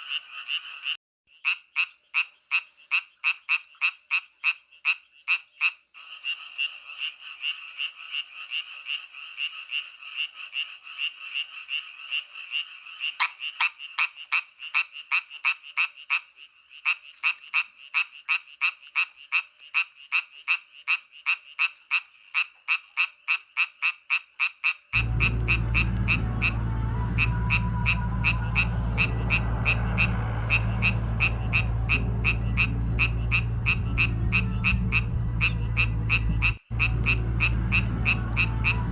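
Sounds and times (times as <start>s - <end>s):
frogs croaking: 0.0s - 38.9s
steady low rumbling: 25.0s - 38.9s.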